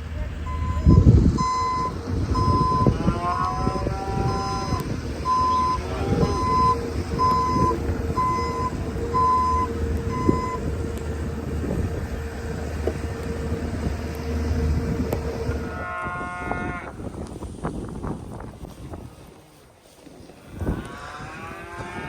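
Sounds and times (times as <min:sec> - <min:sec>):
engine running: 0:00.0 - 0:18.4
reverse alarm beeping: 0:00.4 - 0:11.6.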